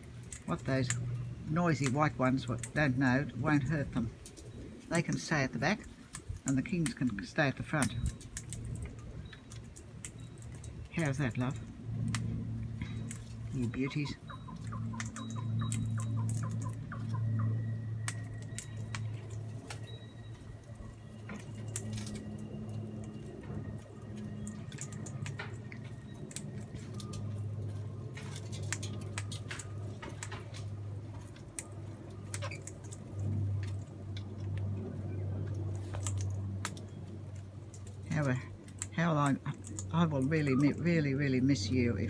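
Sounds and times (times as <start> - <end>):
parrot beaks clicking and crunching: 0.0 - 41.9
steady low hum: 0.0 - 42.0.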